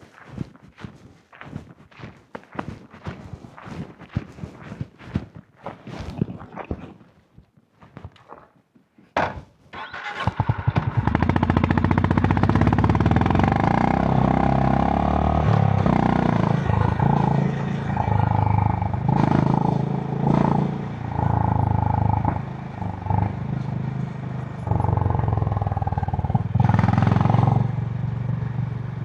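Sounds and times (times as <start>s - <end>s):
motorcycle engine starting and idling: 9.2s - 29.0s
engine revving: 9.8s - 29.0s.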